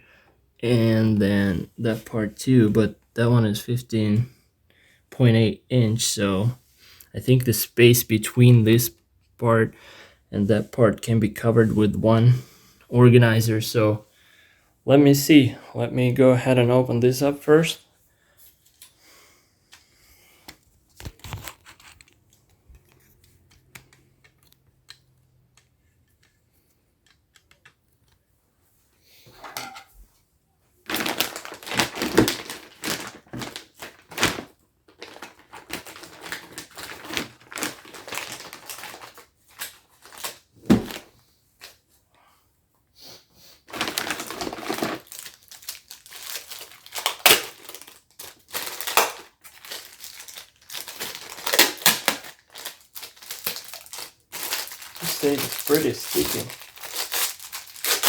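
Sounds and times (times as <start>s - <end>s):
packaging crinkling and tearing: 30.9s - 41.1s, 43.7s - 58.0s.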